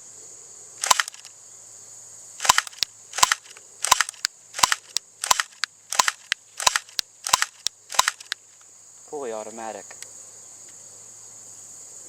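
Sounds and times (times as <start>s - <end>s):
airsoft pistol shots: 0.8s - 1.2s, 2.4s - 8.4s.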